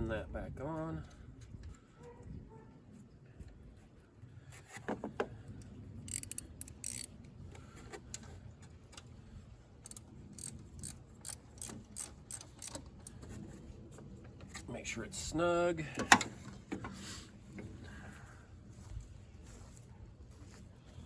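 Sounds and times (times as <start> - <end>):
ratchet clicking: 6.0 - 7.1, 9.8 - 13.2.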